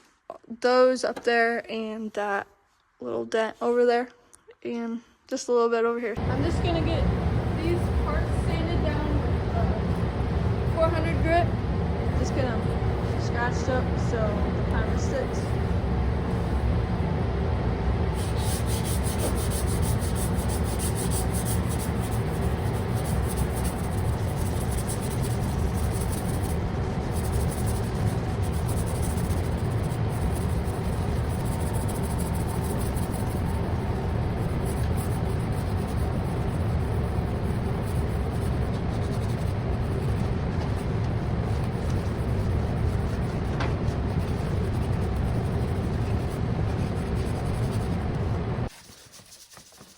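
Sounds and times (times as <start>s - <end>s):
sandpaper rubbing: 18.1s - 49.9s.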